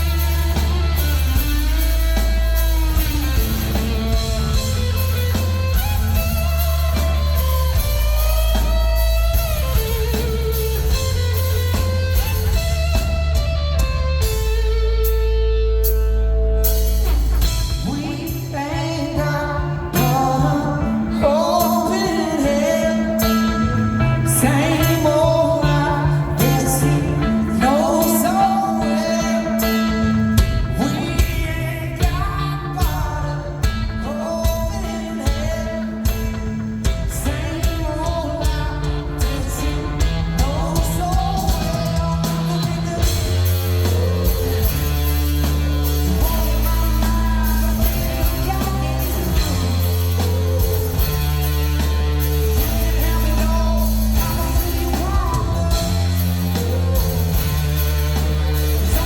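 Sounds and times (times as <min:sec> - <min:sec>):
distorted electric guitar: 0:00.0 - 0:59.0
drums: 0:00.0 - 0:59.0
live rock band playing: 0:00.0 - 0:59.0
person singing: 0:16.6 - 0:59.0.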